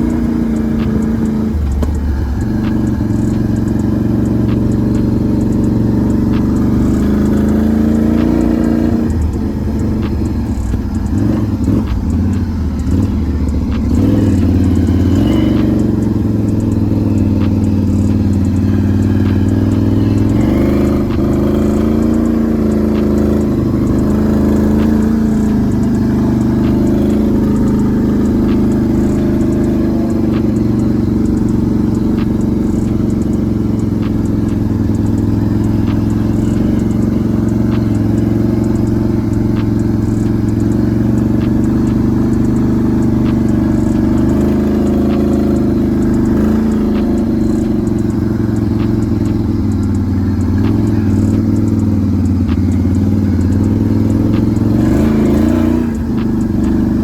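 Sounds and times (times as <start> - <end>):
atv engine running: 0.0 - 57.0.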